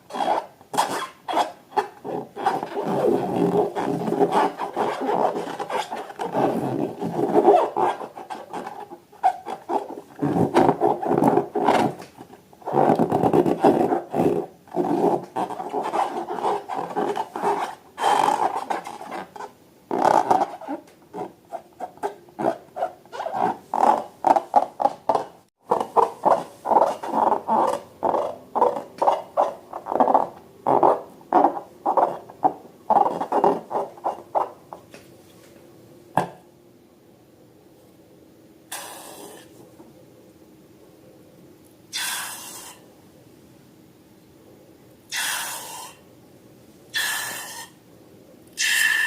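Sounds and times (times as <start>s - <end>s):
balloons squeaking when rubbed: 0.1s - 34.6s.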